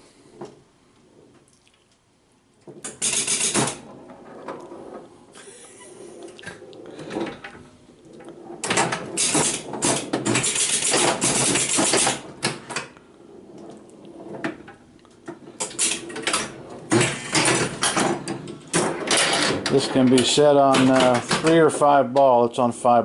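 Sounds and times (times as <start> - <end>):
pinball machine clattering: 2.8 - 5.1, 6.4 - 13.0, 13.6 - 21.8.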